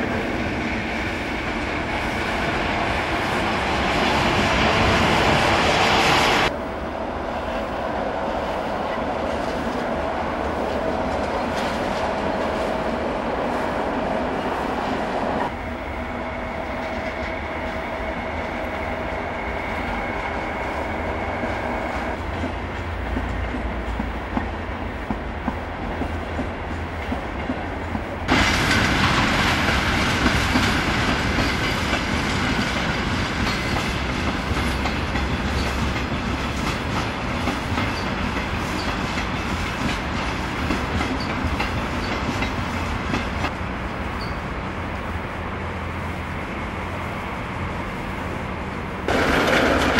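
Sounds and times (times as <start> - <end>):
train wheels clattering over rails: 9.3 - 12.8, 21.1 - 43.6, 49.1 - 49.9.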